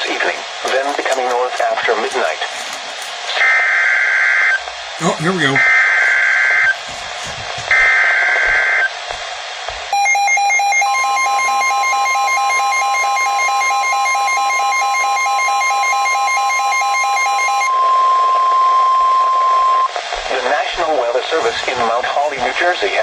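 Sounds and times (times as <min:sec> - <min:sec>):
rapid pulsing beep alarm: 0:09.9 - 0:19.9
steady warning tone: 0:10.0 - 0:19.9.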